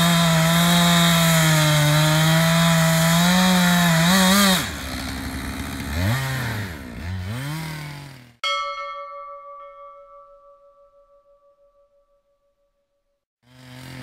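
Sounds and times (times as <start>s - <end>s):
chainsaw revving: 0.0s - 8.4s, 13.4s - 14.0s.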